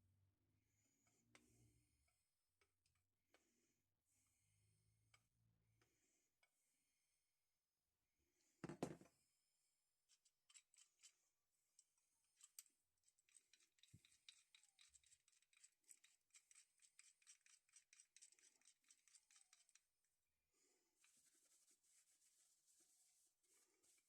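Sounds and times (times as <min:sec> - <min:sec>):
wrench clicks and scratches: 0:10.2 - 0:11.2, 0:12.4 - 0:19.8.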